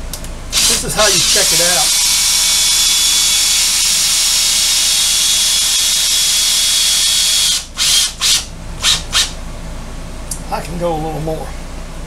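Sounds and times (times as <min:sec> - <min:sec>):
cordless drill whirring: 0:00.6 - 0:09.3.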